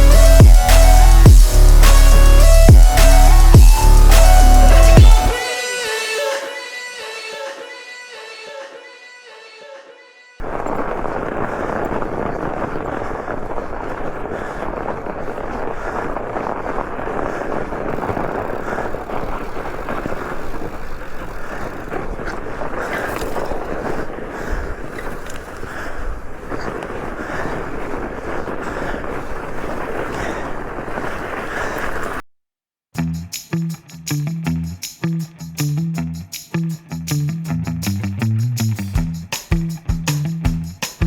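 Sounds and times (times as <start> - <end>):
bike tyres on snow: 10.4 - 32.2
wind rumble on microphone: 10.4 - 32.2.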